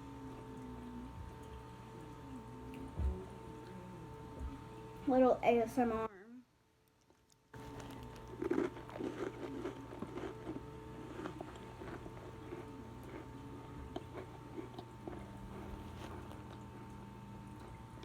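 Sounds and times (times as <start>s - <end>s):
steady low hum: 0.0s - 6.8s, 7.4s - 18.0s
chewing crunchy cracker: 6.9s - 17.8s.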